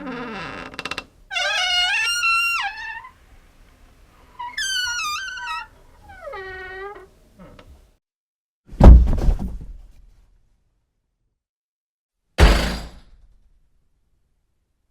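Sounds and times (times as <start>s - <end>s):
door hinge creaking: 0.0s - 3.3s, 4.3s - 7.7s.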